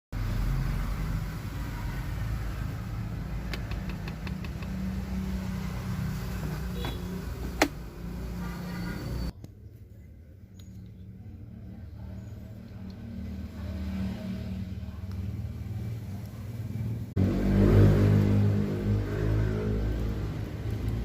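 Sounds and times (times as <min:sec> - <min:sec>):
car cabin road rumble: 0:06.0 - 0:08.4.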